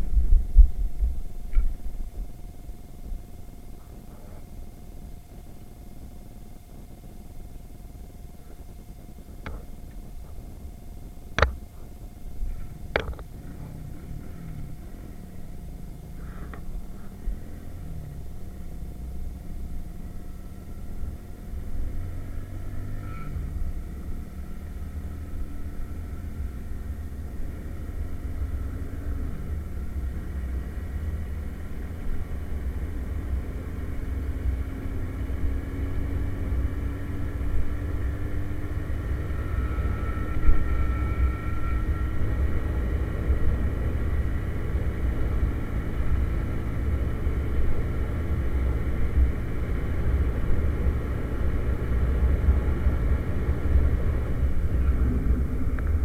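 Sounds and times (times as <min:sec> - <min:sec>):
wind rumble on microphone: 0:00.0 - 0:22.0
moped engine accelerating: 0:11.4 - 0:56.0.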